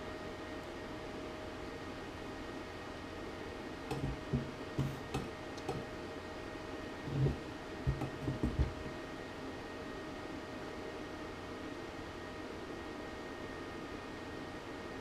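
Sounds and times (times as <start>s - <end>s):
faint hum: 0.0s - 15.0s
dull knocks: 3.9s - 5.8s, 7.1s - 9.0s.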